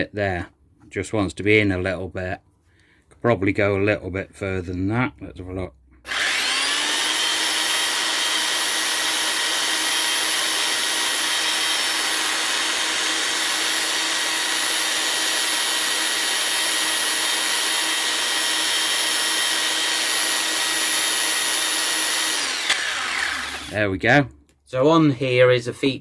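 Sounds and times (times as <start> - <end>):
belt sander whining: 6.0 - 23.9.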